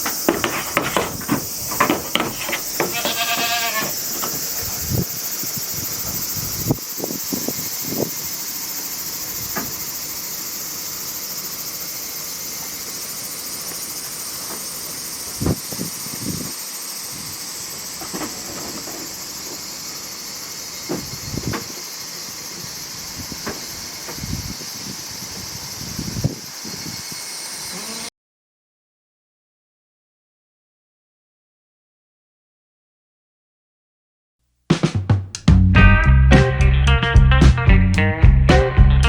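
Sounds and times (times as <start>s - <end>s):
high-pitched hiss: 0.0s - 28.1s.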